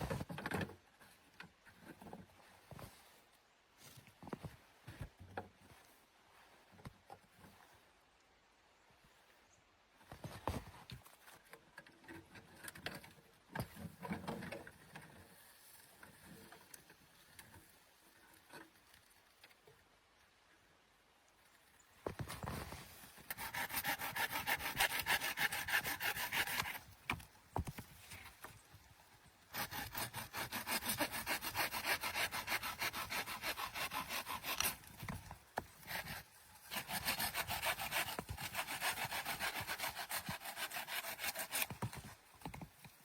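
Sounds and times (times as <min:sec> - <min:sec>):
hand saw cutting wood: 0:23.2 - 0:27.2, 0:29.5 - 0:42.7.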